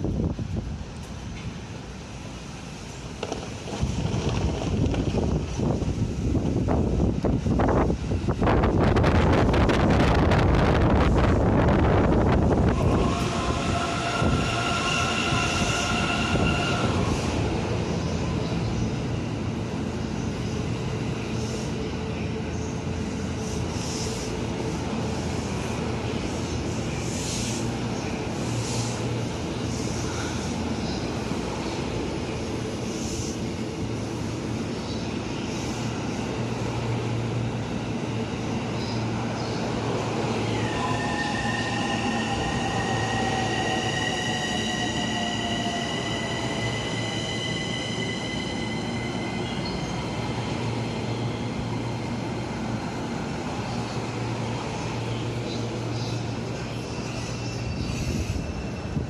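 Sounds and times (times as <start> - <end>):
electric train rumbling past: 0.0 - 59.0.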